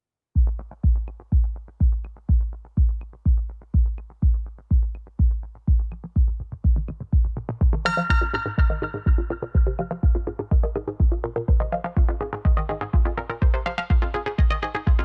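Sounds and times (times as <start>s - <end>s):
kick drum: 0.4s - 15.0s
bright synth melody: 7.9s - 10.4s.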